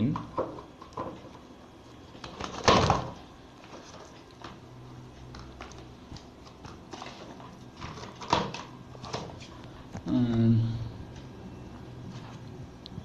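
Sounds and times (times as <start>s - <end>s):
tablet parts clattering on hard surface: 6.6s - 9.4s.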